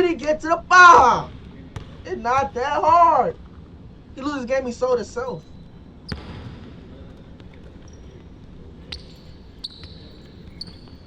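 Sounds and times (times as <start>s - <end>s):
basketball dribbling: 0.9s - 3.2s, 5.4s - 11.0s
sneakers squeaking: 0.9s - 11.0s.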